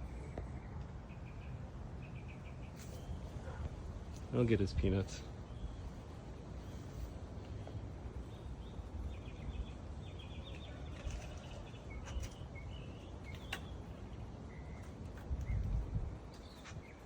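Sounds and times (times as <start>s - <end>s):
small birds chirping: 0.0s - 17.0s
wind on microphone: 15.2s - 17.0s.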